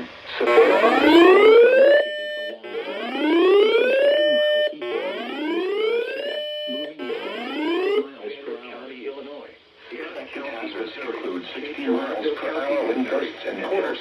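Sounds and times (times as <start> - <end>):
faint warning voice: 0.0 - 8.3
electronic whoop alarm: 0.4 - 8.1.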